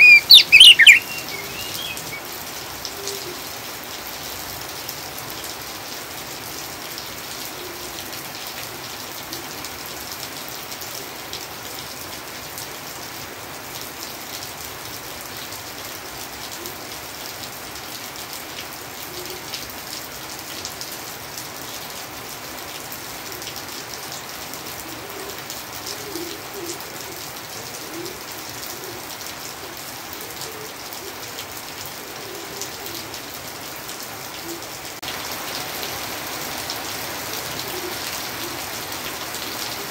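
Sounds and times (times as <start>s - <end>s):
faint low bird calls: 0.0s - 2.3s
steady rain hissing: 0.0s - 39.9s.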